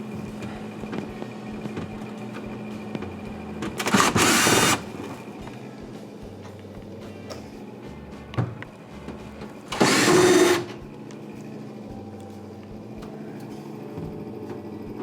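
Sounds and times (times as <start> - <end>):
cordless drill whirring: 3.8 - 5.2, 9.7 - 10.8.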